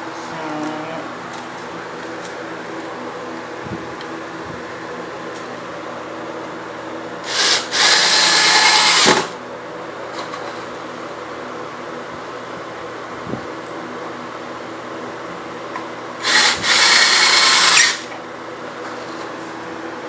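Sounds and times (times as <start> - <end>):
electric drill whining: 7.2 - 9.4, 16.2 - 18.1.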